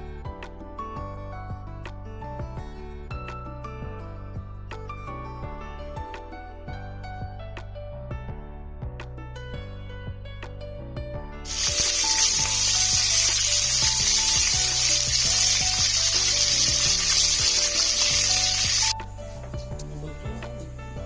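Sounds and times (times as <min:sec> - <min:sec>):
background music: 0:00.0 - 0:21.0
food sizzling in hot oil: 0:11.5 - 0:19.0.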